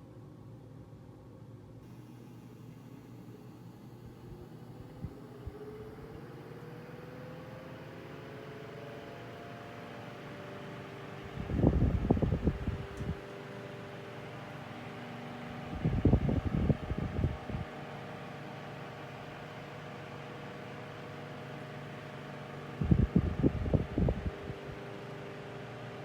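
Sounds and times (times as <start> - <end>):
table fan motor hum: 1.8 - 26.0
wind buffeting microphone: 11.3 - 13.2, 15.7 - 17.7, 22.8 - 24.6.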